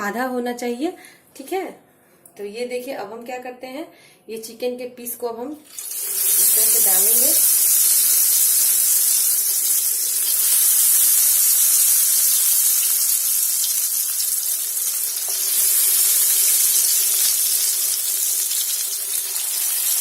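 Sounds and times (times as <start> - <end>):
chicken deep-frying in hot oil: 5.6 - 20.0.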